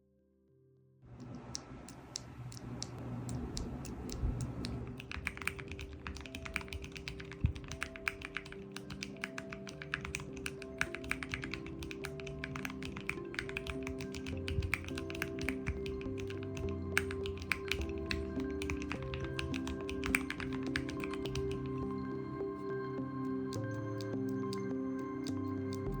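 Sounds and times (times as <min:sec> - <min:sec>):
mechanical keyboard key clicks: 0:01.3 - 0:21.8
background music: 0:03.6 - 0:26.0.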